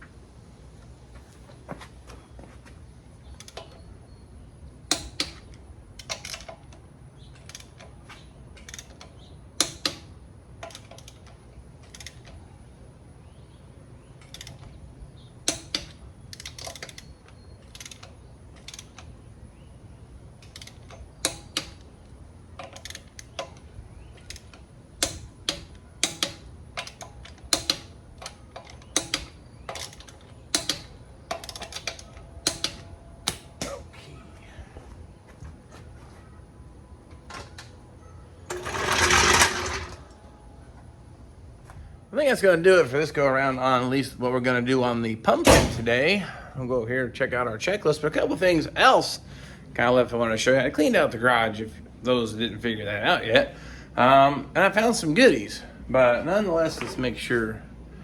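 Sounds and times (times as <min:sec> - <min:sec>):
sharp clicks and knocks: 0:03.3 - 0:03.9, 0:04.9 - 0:12.4, 0:15.4 - 0:19.1, 0:20.4 - 0:21.9, 0:22.6 - 0:33.8.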